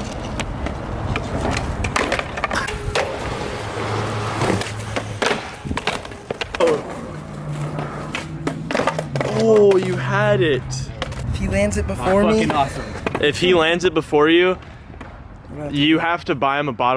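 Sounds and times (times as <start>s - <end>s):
skateboard deck clacking on ground: 0.0s - 3.4s, 4.4s - 10.0s
skateboard wheels rolling on concrete: 0.0s - 16.6s.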